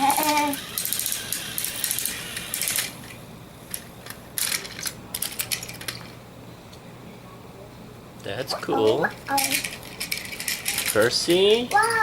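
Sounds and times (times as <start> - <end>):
toy train motors clicking rattle: 0.0 - 6.1, 9.3 - 12.0.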